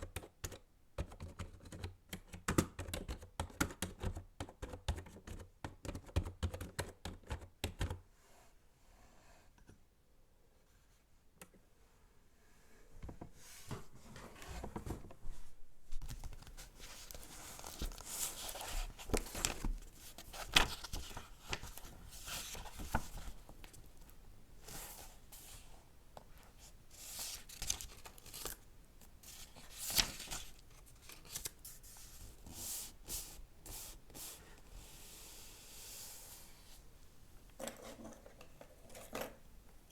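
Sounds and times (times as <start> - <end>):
book pages rustling and turning: 13.6 - 25.7, 26.5 - 34.4
paper crinkles and taps: 16.0 - 24.2.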